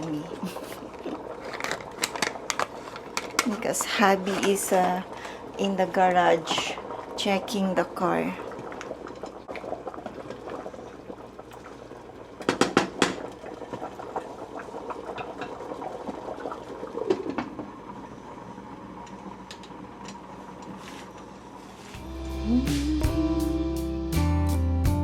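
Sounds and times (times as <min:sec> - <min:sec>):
curry simmering and bubbling: 0:00.1 - 0:21.9
guitar music: 0:22.0 - 0:25.0.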